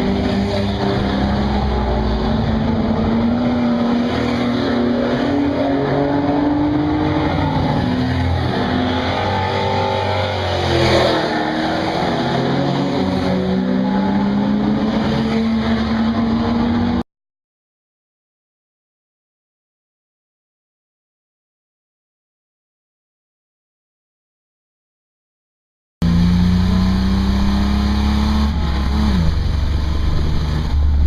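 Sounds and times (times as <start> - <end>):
race car engine running hard: 26.0 - 31.0.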